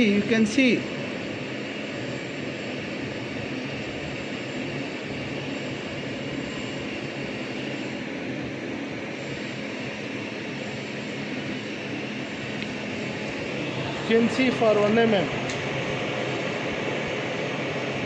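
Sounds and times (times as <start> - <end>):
cooling fan whirring: 0.0 - 18.0
low hum: 8.0 - 18.0.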